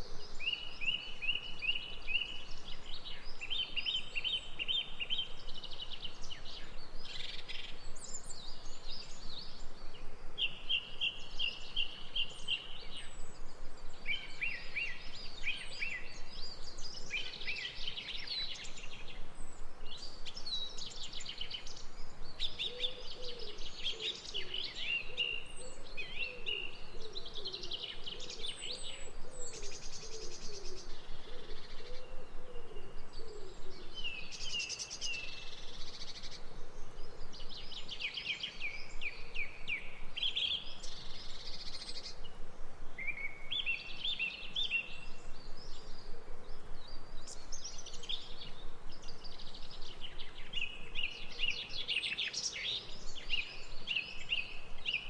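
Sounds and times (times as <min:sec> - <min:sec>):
songbirds singing: 0:00.0 - 0:55.0.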